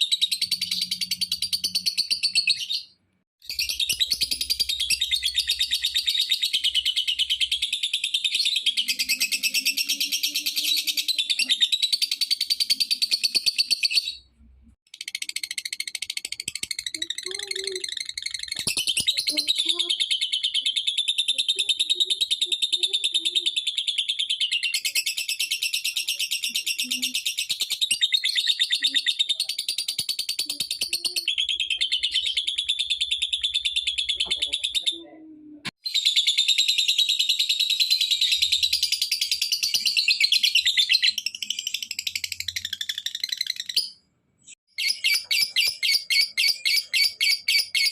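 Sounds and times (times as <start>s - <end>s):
bird chattering trill: 14.9s - 35.1s, 44.7s - 47.9s.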